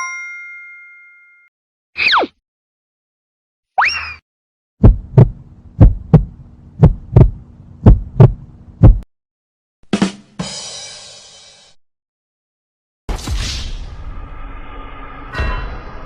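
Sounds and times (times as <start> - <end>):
low hum: 4.8 - 9.0
heartbeat thumps: 4.8 - 9.1.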